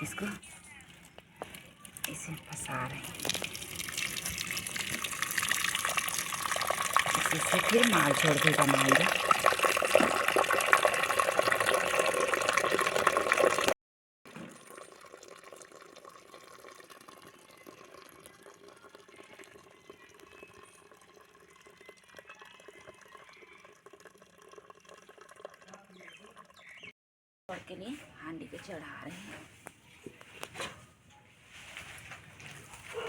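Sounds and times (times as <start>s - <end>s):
faint kitchen sound: 0.0s - 26.9s, 27.5s - 33.0s
water pouring from a pot: 1.8s - 26.9s.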